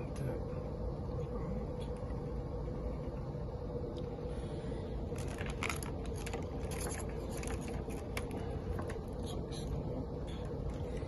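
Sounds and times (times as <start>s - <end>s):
steady hum: 0.0s - 11.0s.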